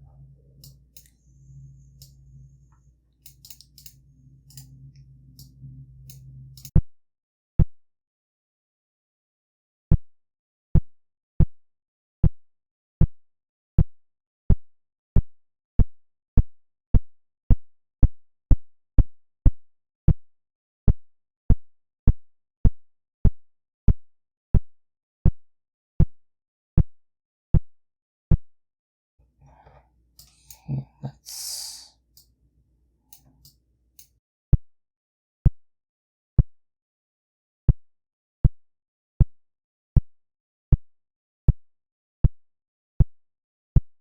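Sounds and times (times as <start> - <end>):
low synthesized buzz pulses: 0.0 - 6.7.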